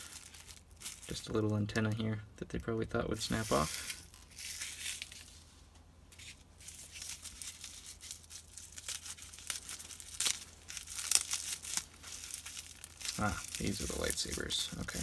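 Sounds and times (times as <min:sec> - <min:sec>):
bubble wrap and tape crinkling: 0:00.0 - 0:15.0.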